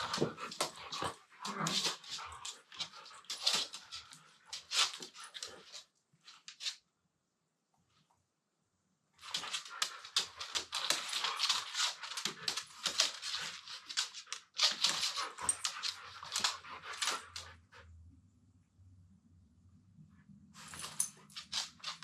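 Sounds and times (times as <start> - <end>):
dogs scuffling: 0.0 - 6.8, 9.2 - 17.5, 20.6 - 22.0.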